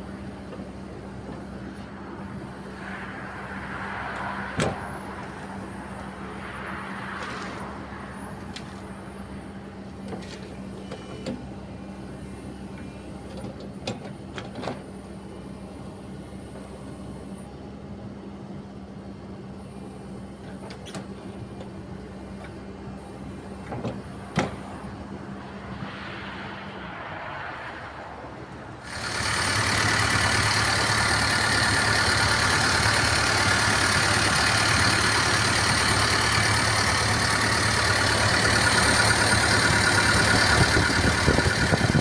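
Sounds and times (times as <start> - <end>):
excavator diesel engine idling: 28.8 - 42.0.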